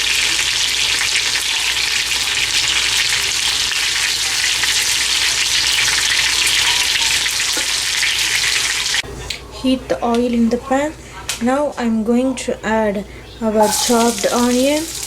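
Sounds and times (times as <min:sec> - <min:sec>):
chicken frying in hot oil: 0:00.0 - 0:09.0, 0:13.6 - 0:15.0.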